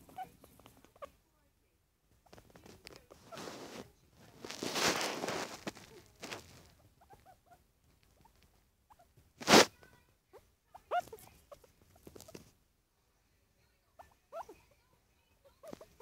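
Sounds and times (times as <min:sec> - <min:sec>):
guinea pig squeaking: 0:00.0 - 0:01.2, 0:02.1 - 0:12.5, 0:13.9 - 0:16.0
loud rustle: 0:03.2 - 0:06.7, 0:09.4 - 0:09.7.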